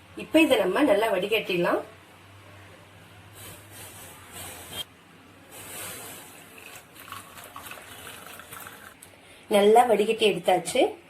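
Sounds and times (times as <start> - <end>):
liquid pouring through strainer: 6.3 - 9.0.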